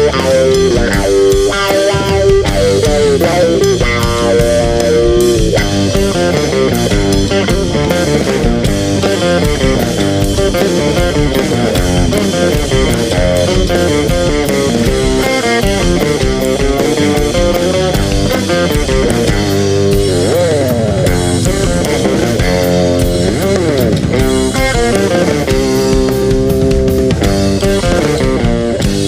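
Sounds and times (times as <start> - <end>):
instrumental rock music: 0.0 - 29.0.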